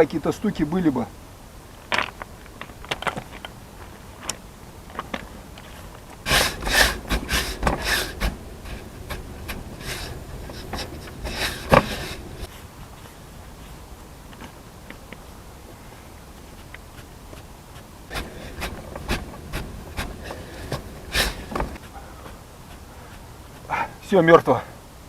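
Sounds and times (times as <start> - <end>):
pry bar scraping and knocking: 6.3 - 12.5, 18.1 - 21.8.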